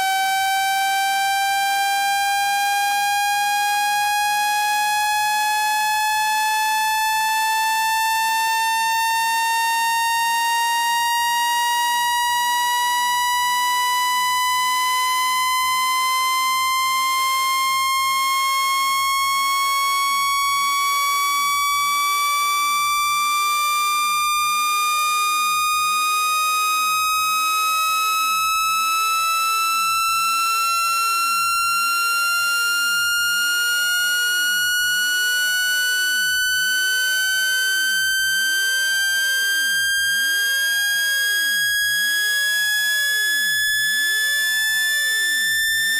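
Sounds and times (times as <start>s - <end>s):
rising electronic test tone: 29.6s - 45.9s.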